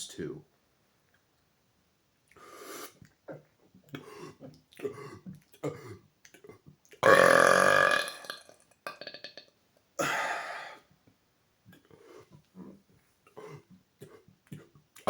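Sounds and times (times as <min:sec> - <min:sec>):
man burping loudly: 0:03.3 - 0:10.8.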